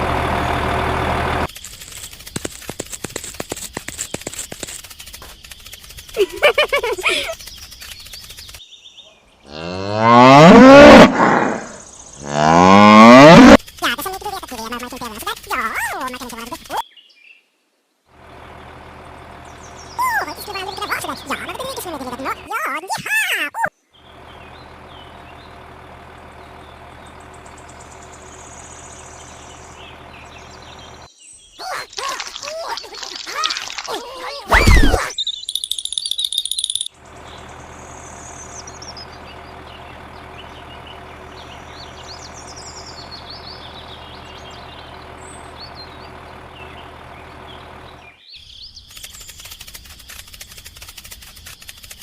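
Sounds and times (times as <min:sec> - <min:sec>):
engine humming: 0:00.0 - 0:08.6, 0:09.5 - 0:16.8, 0:18.1 - 0:22.7, 0:23.9 - 0:35.0, 0:36.6 - 0:52.0
cow mooing: 0:09.5 - 0:13.6
faint bird chirps: 0:26.4 - 0:50.6.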